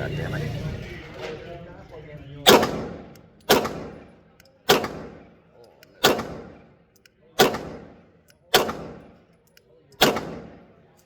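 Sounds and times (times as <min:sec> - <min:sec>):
pistol shots echoing: 0:02.5 - 0:05.4, 0:06.0 - 0:06.8, 0:07.4 - 0:09.2, 0:10.0 - 0:10.8.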